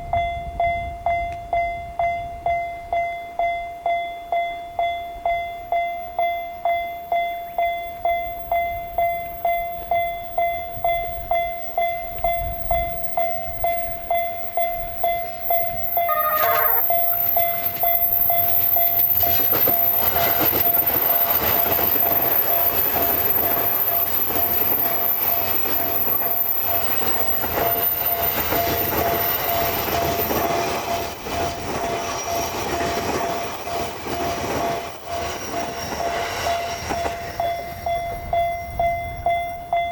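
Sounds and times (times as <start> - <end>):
level crossing warning bell: 0.0 - 31.5, 36.5 - 39.9
train horn: 16.1 - 17.7.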